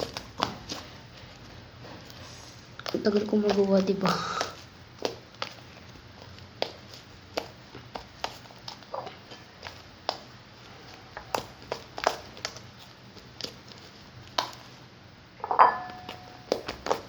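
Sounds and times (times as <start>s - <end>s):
light knocks and clinks: 15.4s - 16.2s
ringing clink: 15.4s - 16.3s.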